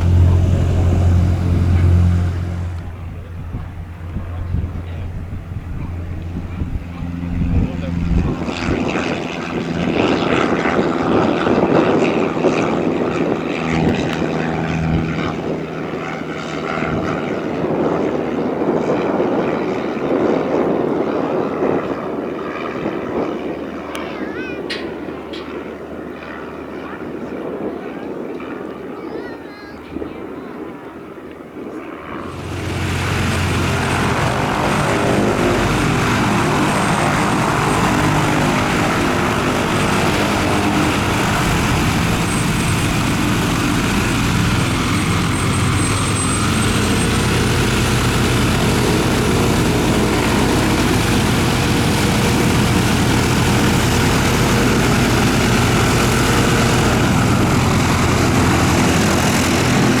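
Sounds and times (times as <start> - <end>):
propeller aircraft engine running: 0.0 - 24.2, 31.9 - 60.0.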